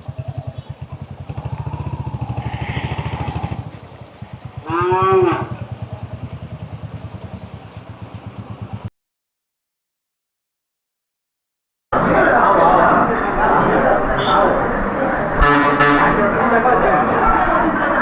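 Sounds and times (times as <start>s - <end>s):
cow mooing: 0.0s - 6.0s
motorcycle engine idling: 0.0s - 8.9s.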